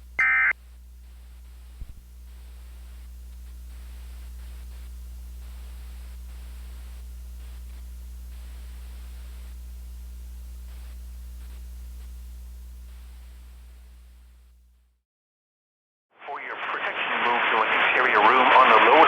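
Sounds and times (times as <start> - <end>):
low electrical hum: 0.0 - 14.9
static hiss: 1.8 - 14.6, 16.2 - 19.0.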